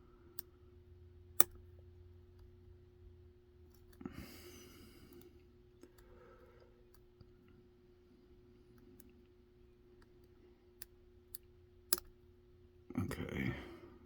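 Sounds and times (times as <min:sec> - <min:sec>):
lock pick clicking in padlock: 0:01.4 - 0:01.6, 0:11.9 - 0:12.1.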